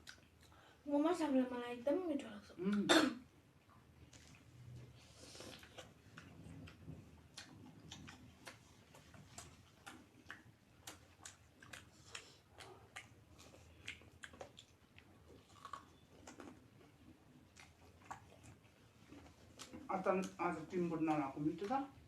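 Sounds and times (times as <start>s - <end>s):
person chewing food: 0.0s - 0.6s, 3.6s - 20.5s.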